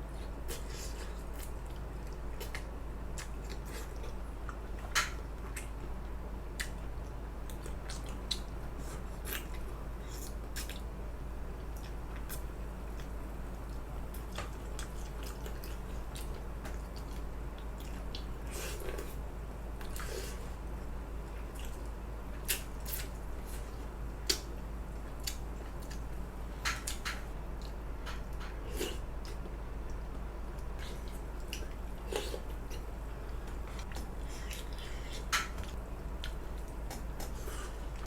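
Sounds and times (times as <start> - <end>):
steady low hum: 0.0 - 38.0
person chewing: 30.6 - 32.8.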